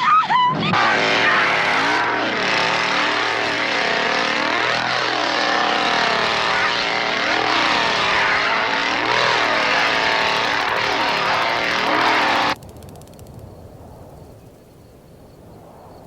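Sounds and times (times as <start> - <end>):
small engine revving: 0.6 - 12.6.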